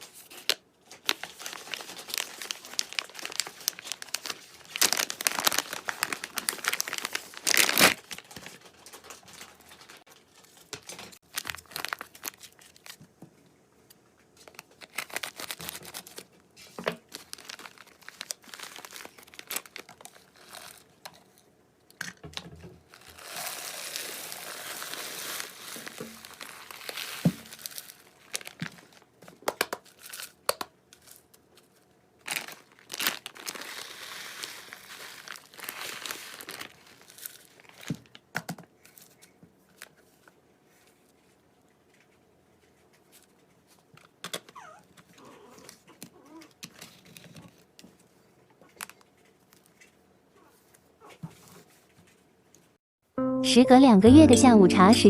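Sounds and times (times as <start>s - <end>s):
plastic packaging crinkling: 0.0s - 13.1s, 14.4s - 21.5s, 22.9s - 40.3s.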